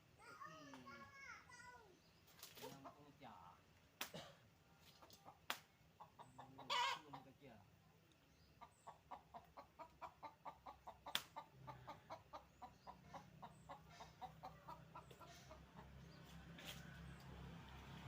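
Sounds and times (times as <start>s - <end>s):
chicken clucking: 4.8s - 7.6s, 8.4s - 16.8s.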